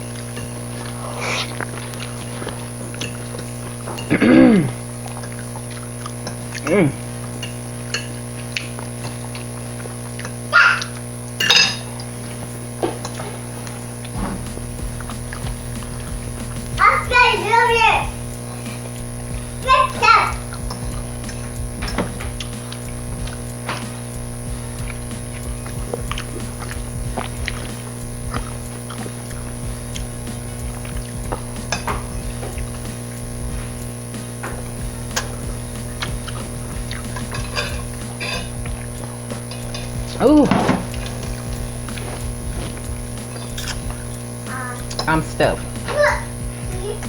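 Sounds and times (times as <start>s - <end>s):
cutlery clinking against dishes: 0.0s - 4.4s, 7.2s - 9.5s, 11.4s - 14.4s, 20.6s - 24.0s, 31.2s - 32.6s, 34.4s - 44.2s, 44.9s - 45.1s
fork against a plate: 0.0s - 14.2s, 27.4s - 33.1s, 34.2s - 45.1s
chewing: 0.0s - 17.0s, 18.0s - 47.0s
steady electrical hum: 0.0s - 47.0s
background music: 14.2s - 44.2s.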